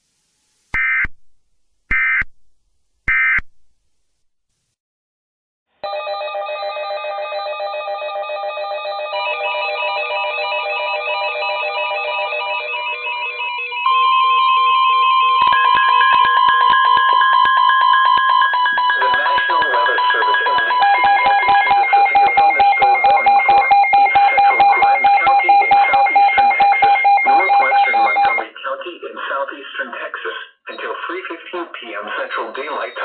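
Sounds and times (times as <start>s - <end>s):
steady alarm tone: 6.7s - 28.4s
electronic beeping tones: 15.0s - 28.4s.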